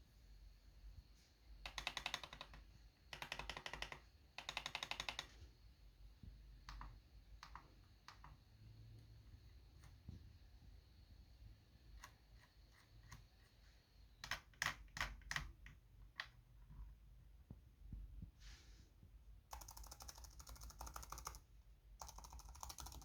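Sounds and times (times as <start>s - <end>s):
keyboard keys tapping: 1.6s - 5.4s, 19.5s - 21.4s, 22.0s - 23.0s.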